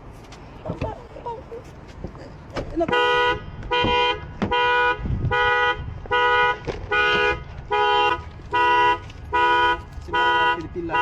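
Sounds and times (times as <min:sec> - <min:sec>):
car horn alarm blasts: 0:02.8 - 0:11.0.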